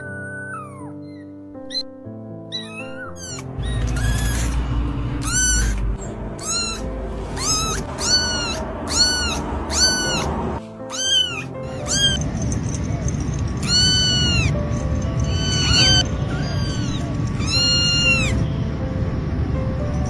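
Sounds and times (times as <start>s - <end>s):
background music: 0.0s - 20.0s
kitten mewing: 2.5s - 12.2s, 13.6s - 14.6s, 15.2s - 18.4s.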